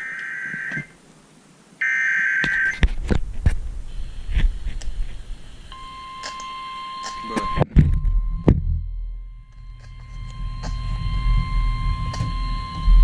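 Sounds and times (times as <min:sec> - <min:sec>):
low thumps: 0:02.8 - 0:13.0
two-tone digital data bursts: 0:05.7 - 0:13.0.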